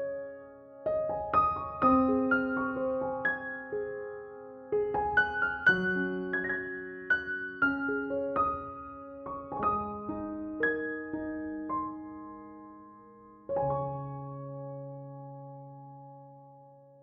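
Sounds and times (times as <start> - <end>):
soft solo piano melody: 0.0 - 17.0.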